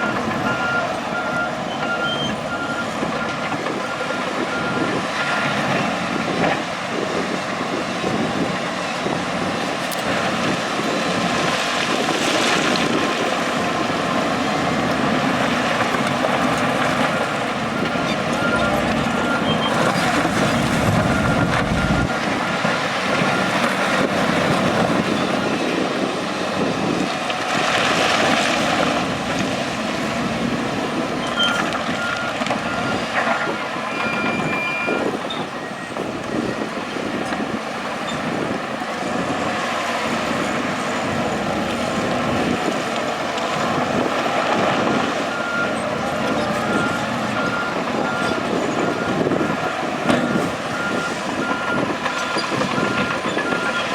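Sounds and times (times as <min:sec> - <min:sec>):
reversing alarm beeping: 0:00.0 - 0:05.5, 0:18.0 - 0:24.1, 0:31.2 - 0:36.7, 0:45.3 - 0:53.9
diesel machinery running: 0:00.0 - 0:53.9.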